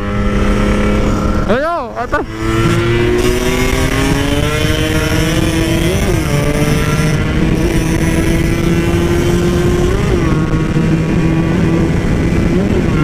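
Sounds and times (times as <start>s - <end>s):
rough rushing noise: 0.0s - 13.0s
two-stroke motorcycle engine: 0.0s - 13.0s.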